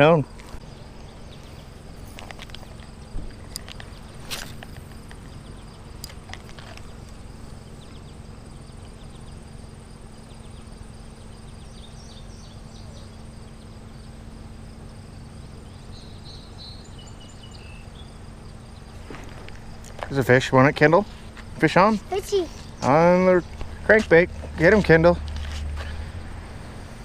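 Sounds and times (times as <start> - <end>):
insect trilling: 0.0 - 24.7
bird chirps: 0.5 - 9.4, 10.1 - 14.3, 15.4 - 19.1, 21.1 - 23.7.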